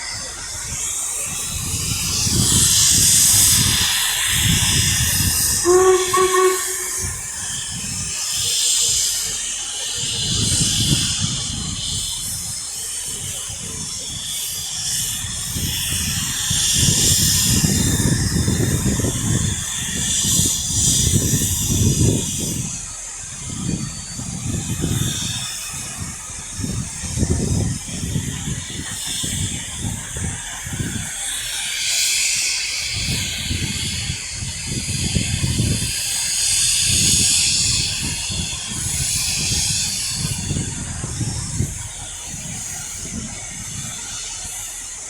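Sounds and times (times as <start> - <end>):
steam hissing: 0.0 - 45.0
two-note locomotive hoot: 5.6 - 7.6.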